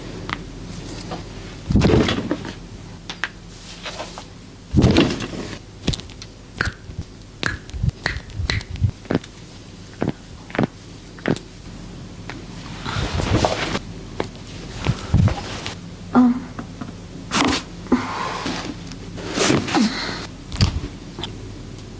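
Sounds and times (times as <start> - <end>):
sharp snapping clicks: 7.4 - 9.2
person grunting: 16.1 - 16.7.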